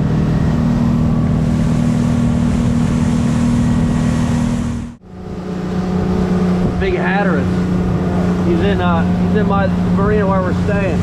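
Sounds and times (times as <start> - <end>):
motorboat engine droning: 0.0 - 11.0.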